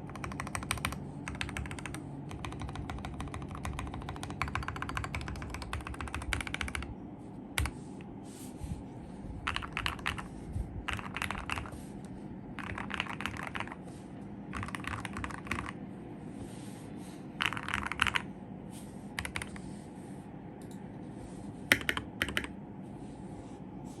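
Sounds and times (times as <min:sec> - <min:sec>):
mechanical keyboard typing: 0:00.0 - 0:06.9, 0:09.4 - 0:11.8, 0:12.5 - 0:13.8, 0:14.5 - 0:15.8, 0:17.4 - 0:18.3, 0:19.2 - 0:19.6, 0:21.7 - 0:22.6.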